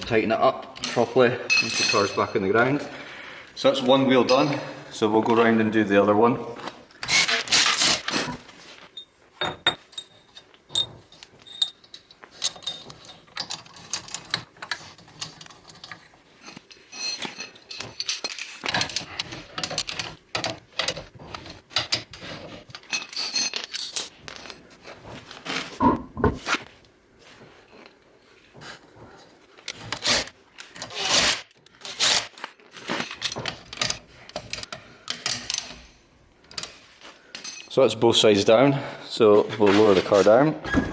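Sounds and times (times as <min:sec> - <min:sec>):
metal clinks and knocks: 0:00.8 - 0:02.5, 0:09.0 - 0:24.6.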